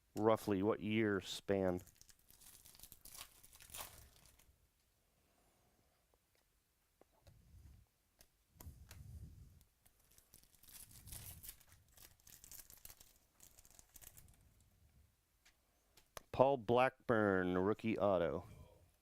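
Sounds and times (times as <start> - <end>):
foil wrappers crinkling and tearing: 1.8 - 4.5, 9.8 - 14.4.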